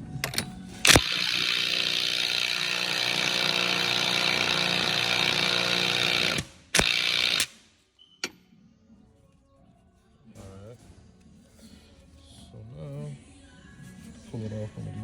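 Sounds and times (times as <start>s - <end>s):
electric ratchet running: 0.2s - 7.6s.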